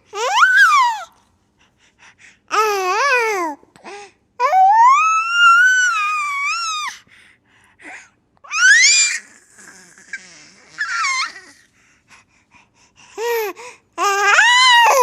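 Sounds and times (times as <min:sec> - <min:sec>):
baby squealing: 0:08.5 - 0:11.6.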